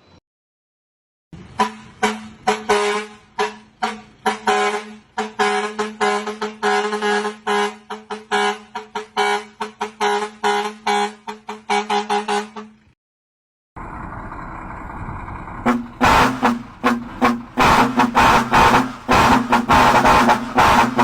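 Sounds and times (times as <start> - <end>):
vehicle horn blasts: 1.6 - 12.8, 15.7 - 21.0.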